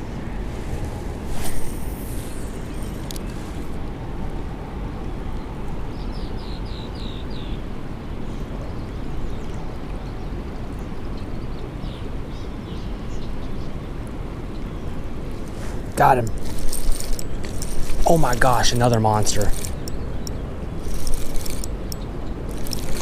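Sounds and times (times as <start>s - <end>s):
flowing river water: 7.6s - 23.0s.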